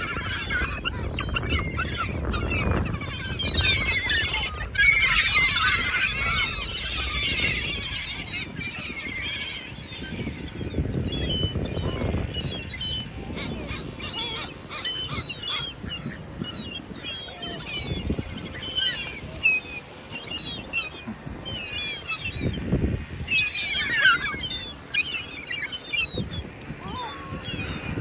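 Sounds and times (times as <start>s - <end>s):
geese and ducks honking: 13.3s - 28.0s.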